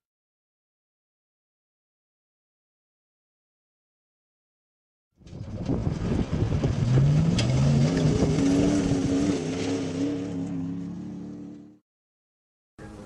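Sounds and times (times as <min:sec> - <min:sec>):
vehicle engine accelerating: 0:05.2 - 0:11.8.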